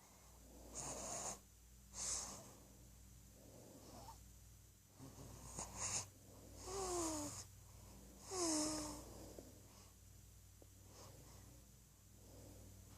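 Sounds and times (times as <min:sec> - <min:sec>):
baby snoring: 0:00.2 - 0:02.6, 0:03.5 - 0:04.2, 0:05.0 - 0:09.9.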